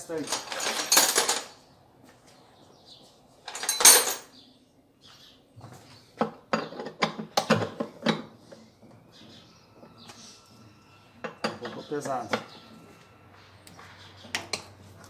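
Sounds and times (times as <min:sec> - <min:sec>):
wrench clinking on metal bolt: 0:03.5 - 0:04.3.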